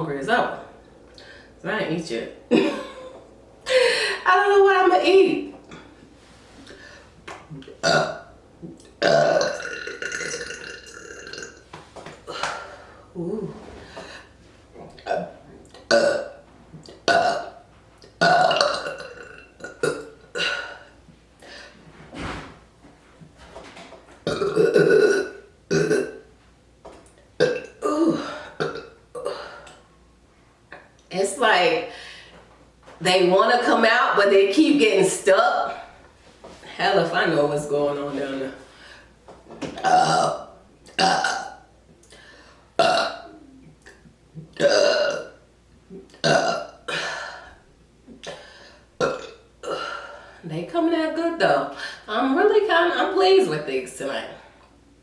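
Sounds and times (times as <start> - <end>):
woman burping: 2.5 - 4.2, 7.6 - 11.6, 12.2 - 14.3, 15.0 - 17.6, 18.2 - 21.0, 24.2 - 26.3, 27.4 - 29.8, 39.8 - 41.7, 42.8 - 47.5, 48.2 - 50.2.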